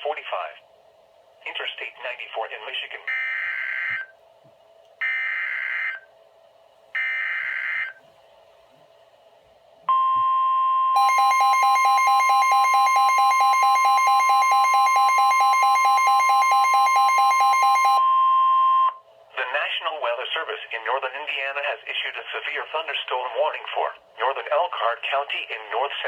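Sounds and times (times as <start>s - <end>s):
steady warning alarm tone: 3.1s - 4.1s, 5.0s - 6.1s, 7.0s - 8.0s, 9.9s - 19.0s
weather radio alarm beeping: 9.9s - 19.0s.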